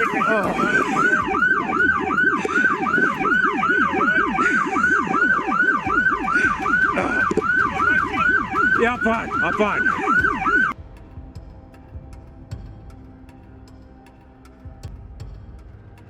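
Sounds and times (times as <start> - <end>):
police sirens yelping: 0.0 - 10.8.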